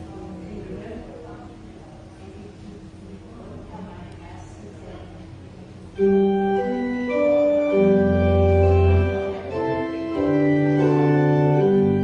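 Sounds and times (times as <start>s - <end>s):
organ playing sustained chords: 5.9s - 12.0s.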